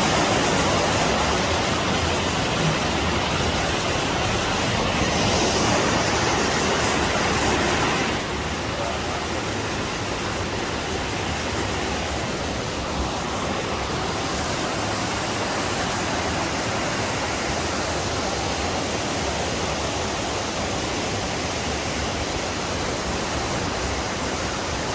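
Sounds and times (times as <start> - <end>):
waterfall rushing: 0.0 - 24.9.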